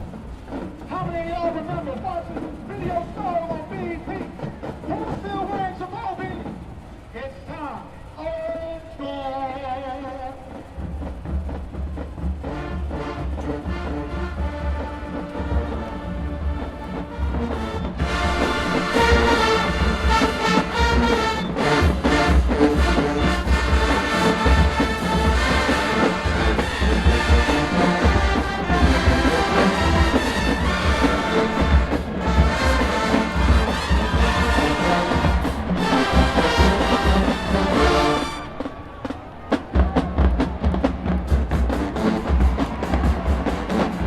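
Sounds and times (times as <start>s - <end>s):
marching drums: 0.0s - 7.5s, 10.3s - 44.0s
brass section playing: 12.4s - 39.3s, 41.3s - 44.0s.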